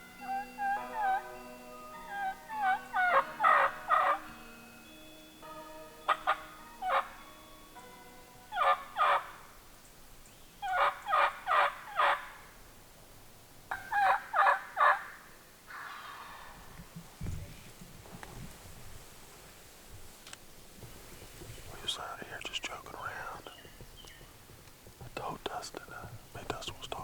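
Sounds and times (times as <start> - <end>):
turkey gobbling: 0.2 - 1.4, 2.0 - 4.3, 6.1 - 7.2, 8.5 - 9.4, 10.6 - 12.4, 13.7 - 16.7.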